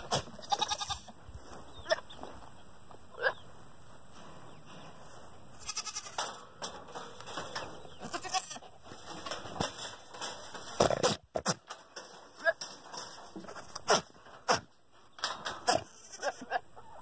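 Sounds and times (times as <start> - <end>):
goat bleating: 0.0 - 1.2, 1.8 - 2.2, 5.5 - 6.3, 7.9 - 8.8, 15.6 - 16.8.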